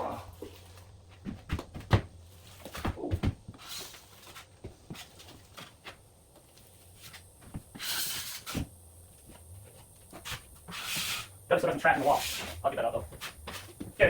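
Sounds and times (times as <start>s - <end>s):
drywall knife scraping: 10.2s - 11.4s.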